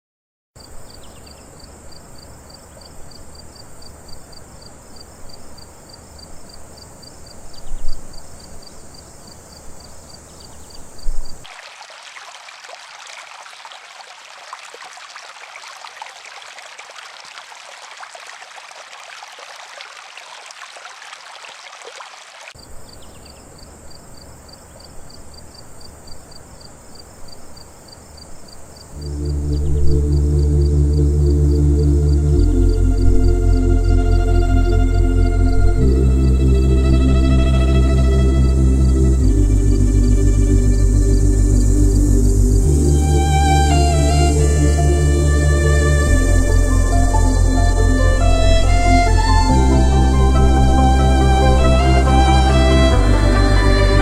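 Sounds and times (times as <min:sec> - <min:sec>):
stream rushing: 0:11.4 - 0:22.6, 0:42.3 - 0:54.0
steady high hiss: 0:22.6 - 0:54.0
high pulsing chirping: 0:29.0 - 0:54.0.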